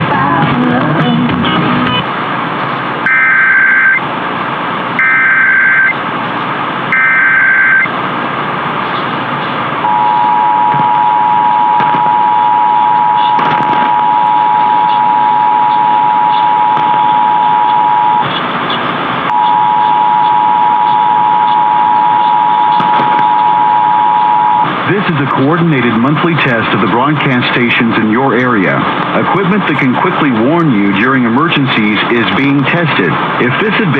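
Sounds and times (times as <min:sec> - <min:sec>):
radio static hiss: 0:00.0 - 0:33.9
buzzing data bursts: 0:03.0 - 0:04.0, 0:05.0 - 0:06.0, 0:06.9 - 0:07.9
two-tone attention signal: 0:03.1 - 0:04.0, 0:05.0 - 0:06.0, 0:07.0 - 0:07.9, 0:09.9 - 0:18.3, 0:19.3 - 0:24.7.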